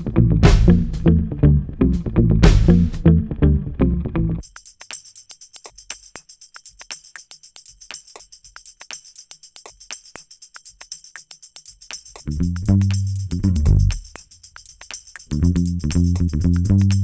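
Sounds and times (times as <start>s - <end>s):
band with bass: 0.0s - 4.4s, 12.3s - 14.0s, 15.3s - 17.0s
jingling hand percussion: 4.4s - 17.0s.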